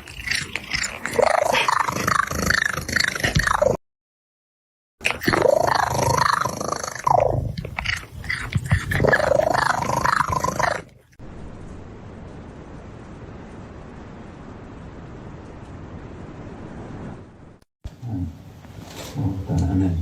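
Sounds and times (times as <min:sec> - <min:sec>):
cat yowling: 0:00.0 - 0:03.8
steady low hiss: 0:05.5 - 0:20.0.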